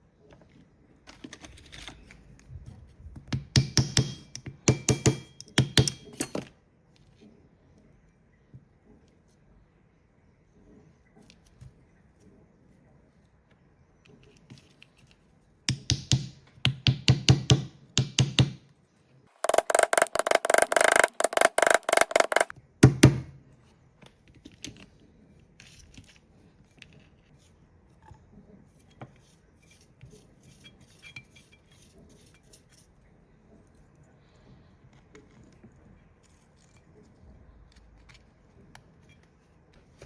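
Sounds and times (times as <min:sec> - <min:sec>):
handling noises: 0:19.3 - 0:22.5.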